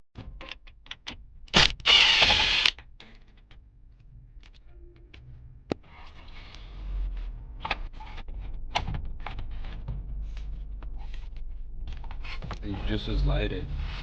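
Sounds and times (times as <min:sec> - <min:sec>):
sharp clicks and knocks: 0:00.2 - 0:03.6
rustling and rubbing: 0:05.8 - 0:14.0.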